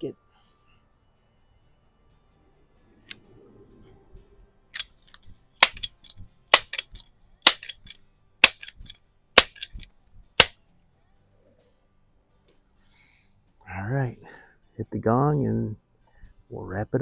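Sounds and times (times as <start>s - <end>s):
air rifle pump clacking: 4.8s - 10.5s.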